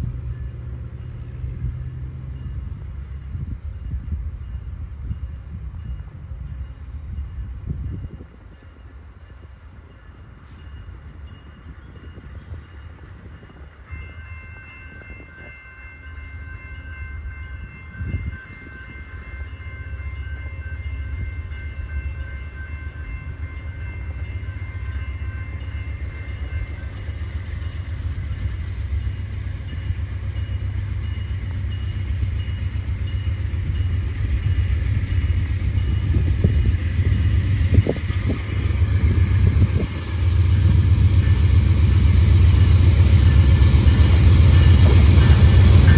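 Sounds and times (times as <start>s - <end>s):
freight train rumble: 0.0s - 45.9s
train horn chord: 43.1s - 45.9s
train wheel knocks: 43.6s - 45.9s.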